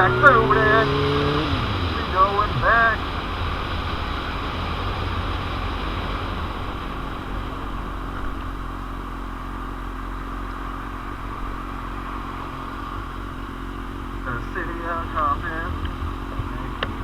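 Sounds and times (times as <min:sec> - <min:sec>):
wind noise on microphone: 0:00.0 - 0:09.3, 0:15.1 - 0:17.0
motorcycle engine running: 0:00.0 - 0:17.0.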